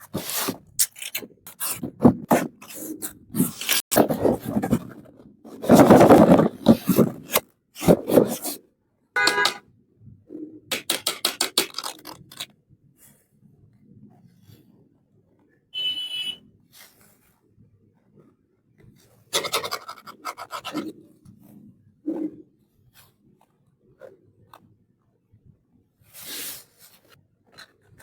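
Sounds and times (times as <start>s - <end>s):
plastic toy pieces rustling: 5.5s - 8.4s, 11.0s - 12.5s.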